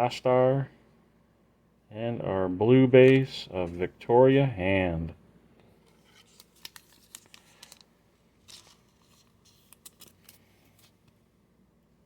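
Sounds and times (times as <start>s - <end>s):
trading cards clicking and rustling: 5.9s - 11.2s.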